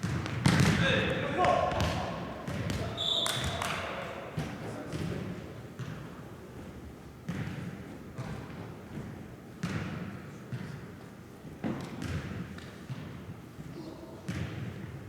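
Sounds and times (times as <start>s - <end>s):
ball kicked and bouncing: 11.6s - 13.2s.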